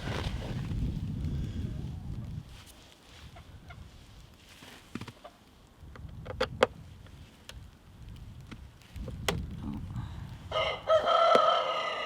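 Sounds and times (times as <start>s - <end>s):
rooster crowing: 10.5s - 12.0s.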